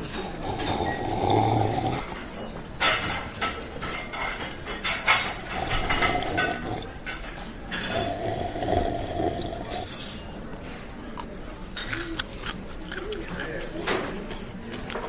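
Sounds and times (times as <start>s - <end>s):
water running: 0.0s - 2.2s, 4.5s - 9.9s
dishes clinking and knocking: 0.0s - 11.0s.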